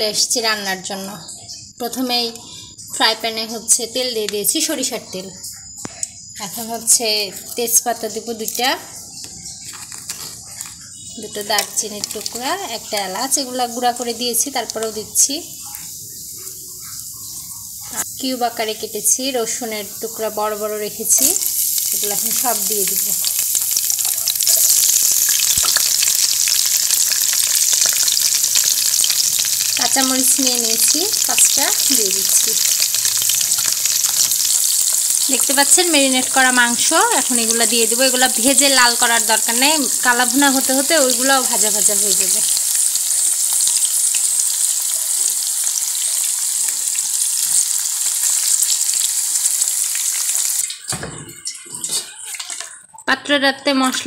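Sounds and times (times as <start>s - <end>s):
spices sizzling in hot oil: 3.0s - 50.9s.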